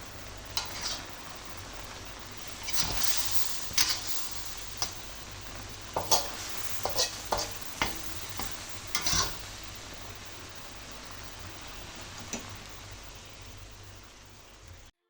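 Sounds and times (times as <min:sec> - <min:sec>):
food sizzling in a frying pan: 0:00.0 - 0:14.9
spatula scraping a pan: 0:00.5 - 0:01.4, 0:02.4 - 0:05.0, 0:05.9 - 0:09.6.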